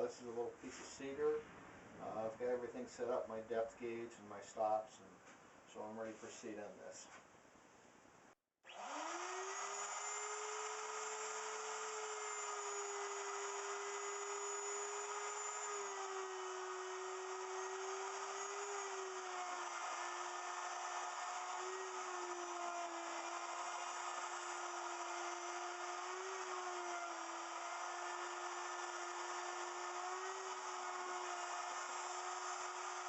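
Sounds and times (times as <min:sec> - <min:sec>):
wood router motor whining: 0:08.7 - 0:33.0.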